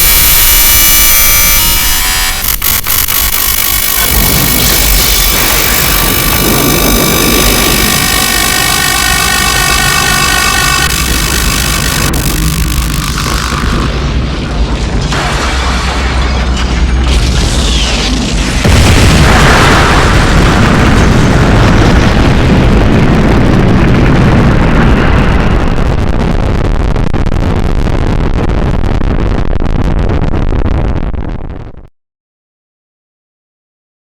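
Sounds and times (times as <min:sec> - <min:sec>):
deep rumble: 0:00.0 - 0:31.9
explosion blast: 0:13.9 - 0:31.6.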